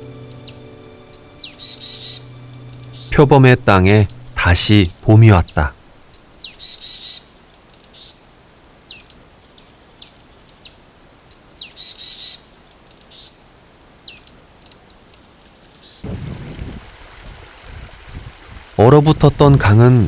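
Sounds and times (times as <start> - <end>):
river water flowing: 0.0 - 6.9, 16.0 - 20.0
songbirds chirping: 0.0 - 16.1.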